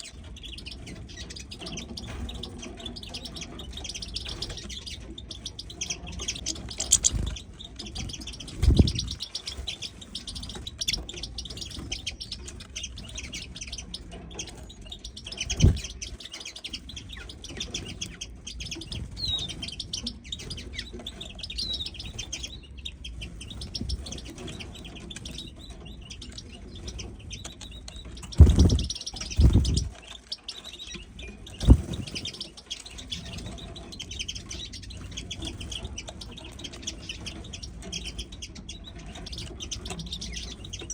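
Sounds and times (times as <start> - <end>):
songbirds chirping and twittering: 0.0 - 40.9
dull low thumps: 8.6 - 9.2, 28.4 - 29.9.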